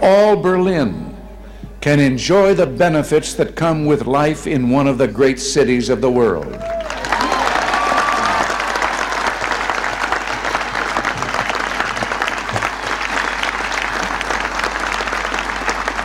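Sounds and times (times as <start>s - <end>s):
crowd applauding: 6.5s - 16.0s.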